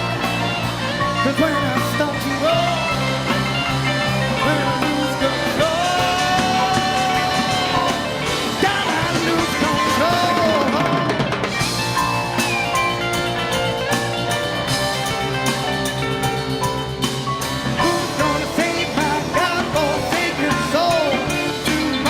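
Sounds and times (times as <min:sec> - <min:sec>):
person singing: 0:00.0 - 0:11.6, 0:17.6 - 0:22.0
drum kit hits: 0:00.0 - 0:22.0
rock band playing live: 0:00.0 - 0:22.0.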